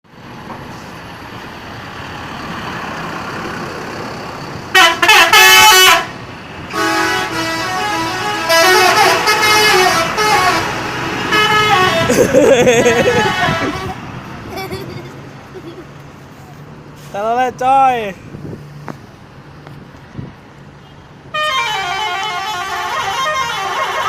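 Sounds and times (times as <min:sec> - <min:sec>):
bus engine and road noise: 0:00.0 - 0:24.0
bus multi-tone horn tune: 0:04.7 - 0:14.2, 0:21.3 - 0:24.0.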